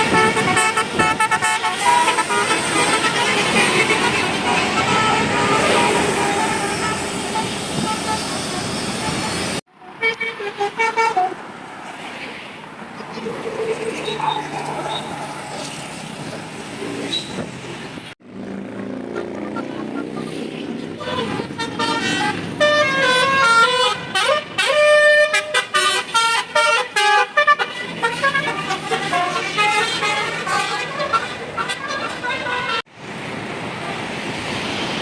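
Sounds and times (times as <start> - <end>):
bus musical horn melody: 0.0 - 11.5, 21.0 - 32.9
road noise: 0.0 - 35.0.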